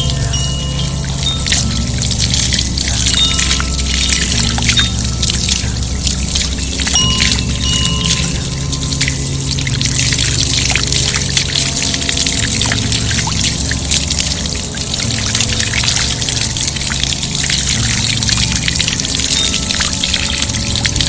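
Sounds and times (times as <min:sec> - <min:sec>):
low drone tones: 0:00.0 - 0:21.0
water trickling and splashing: 0:00.0 - 0:21.0.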